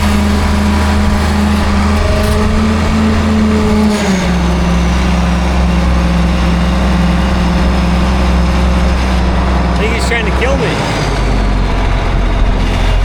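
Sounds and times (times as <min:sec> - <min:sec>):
large engine running: 0:00.0 - 0:13.0.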